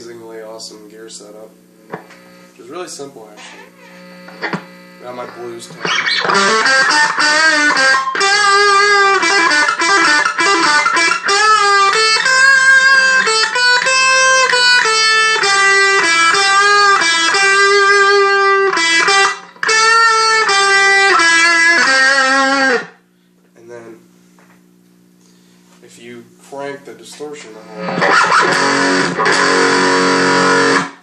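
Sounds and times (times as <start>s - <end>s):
electric guitar blues lead: 4.1s - 23.0s, 27.6s - 31.0s.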